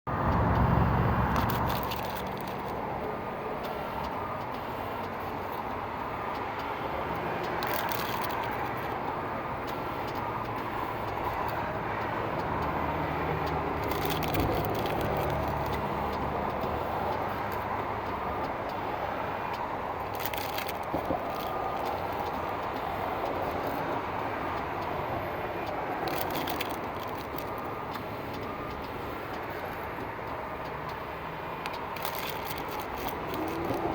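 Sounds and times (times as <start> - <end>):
steady background noise: 0.1 - 33.9
receipt printer noise bursts: 6.9 - 33.9.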